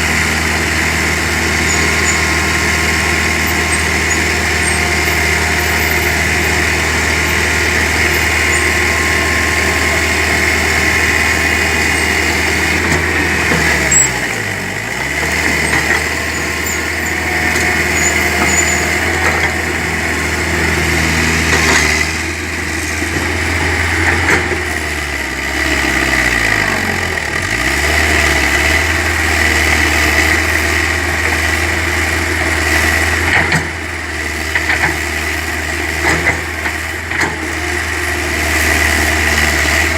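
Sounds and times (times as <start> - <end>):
excavator engine running: 0.0 - 39.9.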